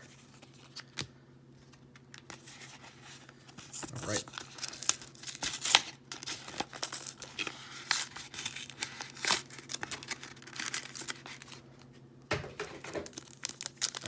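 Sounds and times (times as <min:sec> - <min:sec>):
foil wrapper crinkling and tearing: 0:02.1 - 0:11.6, 0:12.8 - 0:14.0.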